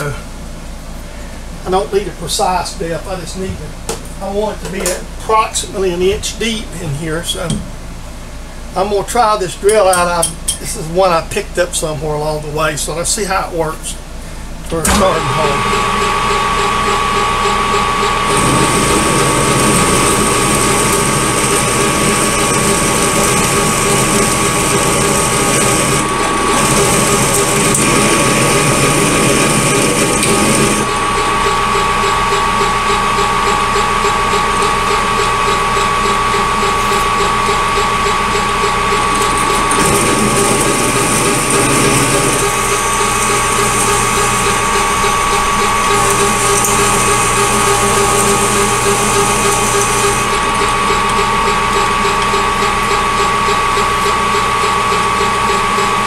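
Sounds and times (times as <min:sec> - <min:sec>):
lathe gear whine: 0:12.2 - 0:56.0
drill cutting metal: 0:14.7 - 0:56.0.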